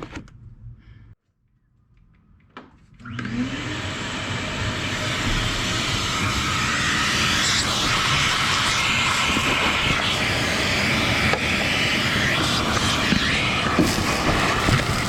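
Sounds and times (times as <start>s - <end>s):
vacuum cleaner motor running: 3.0s - 15.0s.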